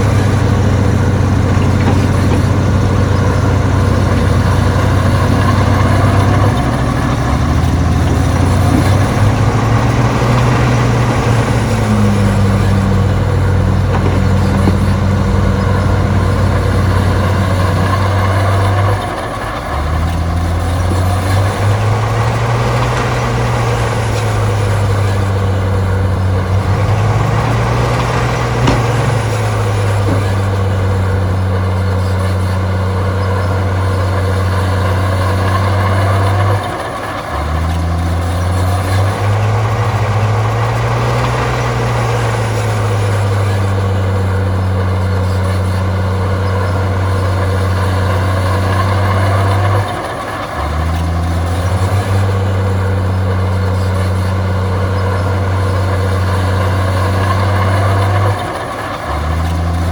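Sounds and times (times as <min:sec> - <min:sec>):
heavy diesel engine running: 0:00.0 - 0:59.9.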